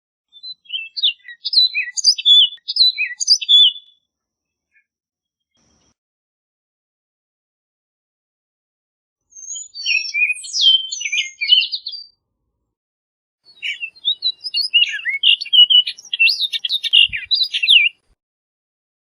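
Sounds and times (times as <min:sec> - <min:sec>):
bird singing whistles and chatter: 0:00.3 - 0:04.0, 0:09.3 - 0:12.1, 0:13.5 - 0:18.0.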